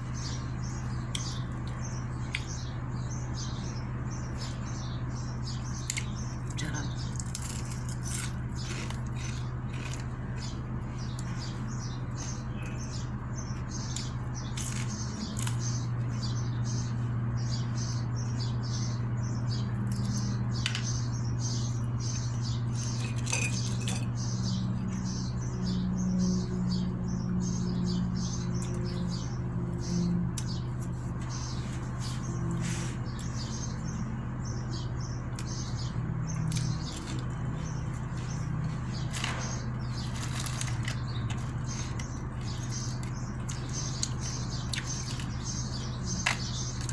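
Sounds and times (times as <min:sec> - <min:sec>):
person chewing and crunching food: 0:05.8 - 0:16.1, 0:35.3 - 0:46.9.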